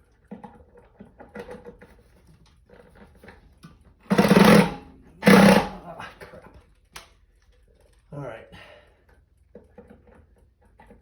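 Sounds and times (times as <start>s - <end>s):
impact drill driving screw: 4.1s - 5.8s.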